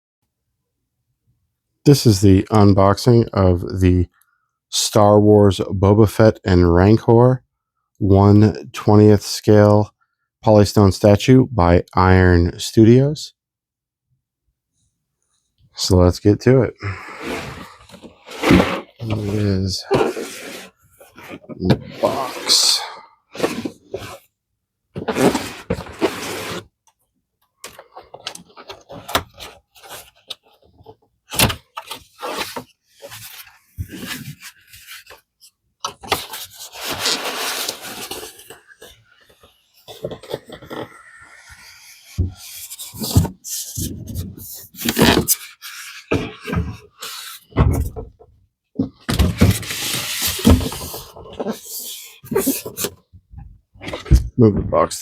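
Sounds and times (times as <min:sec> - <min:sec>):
cardboard scraping and rustling: 0:17.2 - 0:22.7, 0:23.3 - 0:24.3, 0:25.0 - 0:26.7, 0:27.7 - 0:48.2, 0:48.8 - 0:53.0.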